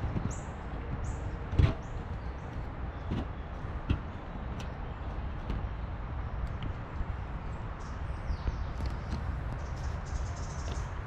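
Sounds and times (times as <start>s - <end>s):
dull thumps: 0.0s - 5.8s
small birds chirping: 0.0s - 11.0s.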